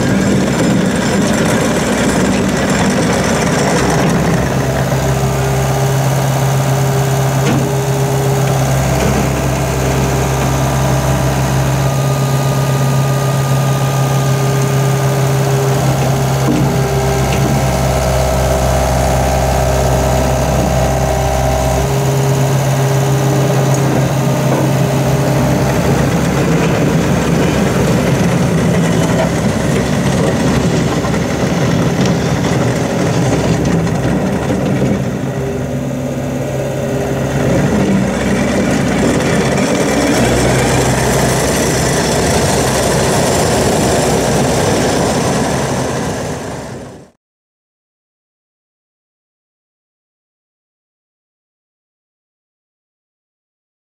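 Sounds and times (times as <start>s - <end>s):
deep low hum: 0.0s - 46.9s
diesel engine running: 0.0s - 47.2s.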